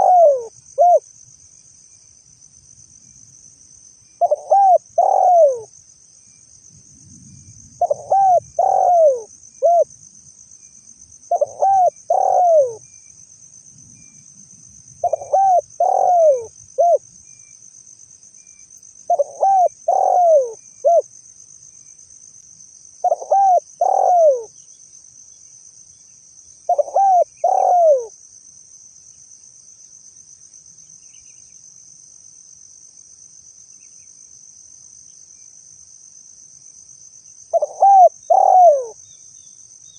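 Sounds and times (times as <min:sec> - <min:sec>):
dove cooing: 0:00.0 - 0:01.0, 0:04.2 - 0:05.7, 0:07.8 - 0:09.9, 0:11.3 - 0:12.8, 0:15.0 - 0:17.0, 0:19.1 - 0:21.0, 0:23.0 - 0:24.5, 0:26.7 - 0:28.1, 0:37.5 - 0:39.0
high insect trill: 0:00.0 - 0:39.9.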